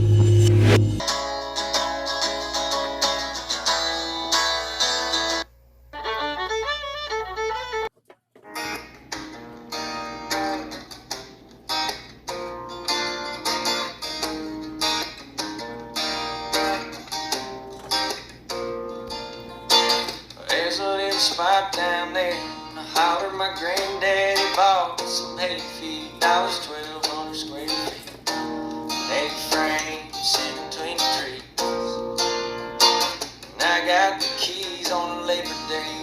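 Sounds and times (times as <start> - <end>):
country music with fiddle and guitar: 6.0 - 7.9.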